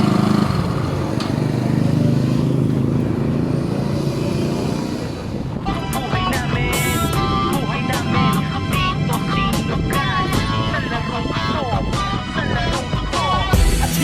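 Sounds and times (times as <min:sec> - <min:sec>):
scooter engine idling: 0:00.0 - 0:12.1
background music: 0:05.4 - 0:14.0.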